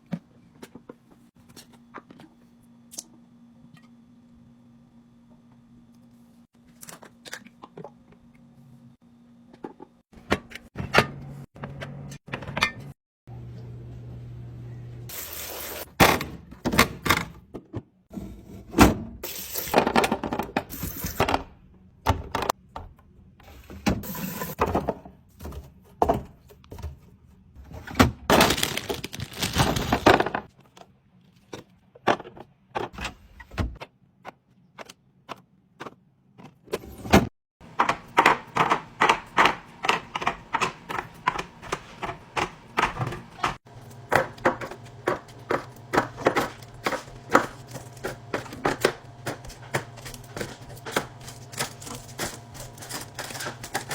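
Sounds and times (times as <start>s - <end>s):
packaging rustling: 28.3s - 30.2s, 49.9s - 53.9s
food containers tapping and clinking: 37.6s - 53.9s.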